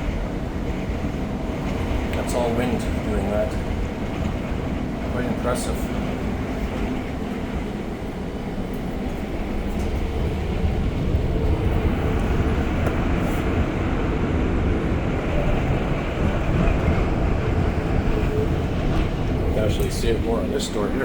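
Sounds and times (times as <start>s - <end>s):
train interior low rumble: 0.0s - 21.0s.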